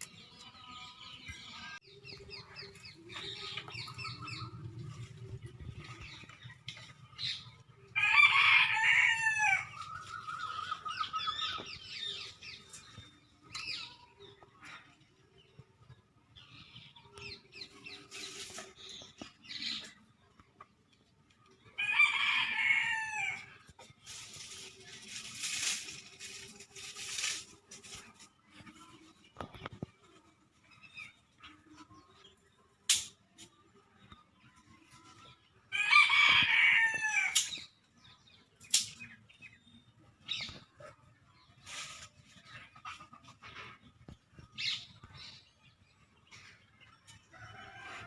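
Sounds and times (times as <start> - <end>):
rooster crowing: 8.0 - 9.8, 21.8 - 23.5, 35.7 - 37.4.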